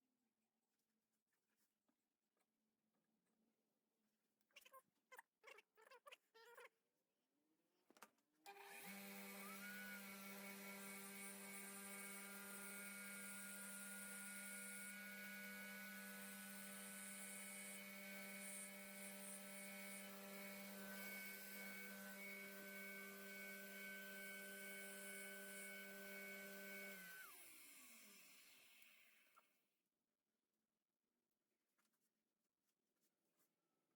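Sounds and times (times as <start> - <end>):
benchtop grinder running: 8.5 - 29.3.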